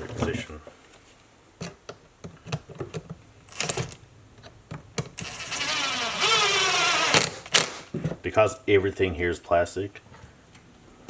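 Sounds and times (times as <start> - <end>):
cordless drill driving screw: 5.2 - 7.9.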